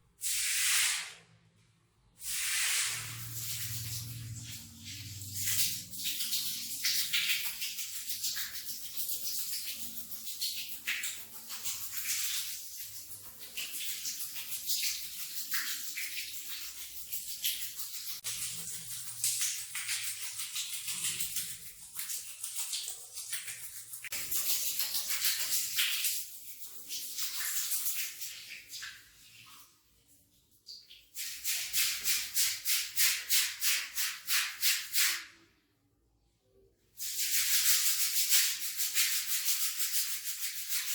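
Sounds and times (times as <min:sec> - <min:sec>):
brush scrubbing wet rug: 0:02.6 - 0:10.3.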